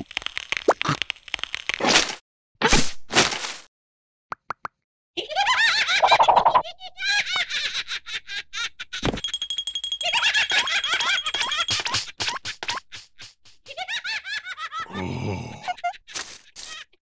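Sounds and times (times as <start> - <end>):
cartoon characters giggling and chattering: 5.2 - 9.0, 10.0 - 17.0.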